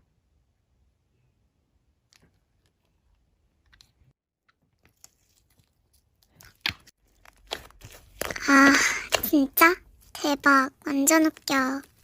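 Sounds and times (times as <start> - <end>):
slime clicking and crackling: 4.5 - 10.4.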